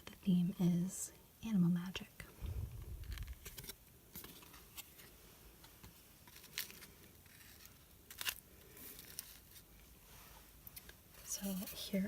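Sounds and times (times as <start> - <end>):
paper rustling: 2.8 - 9.8.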